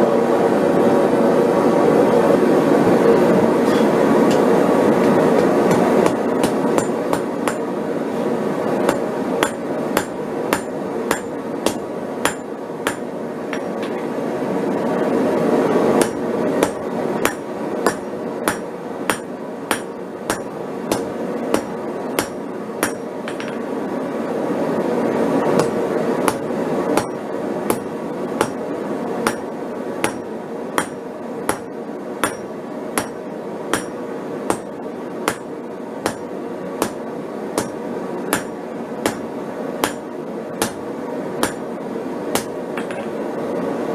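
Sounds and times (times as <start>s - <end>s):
hammer ringing on anvil: 8.9s - 13.7s, 30.8s - 34.7s.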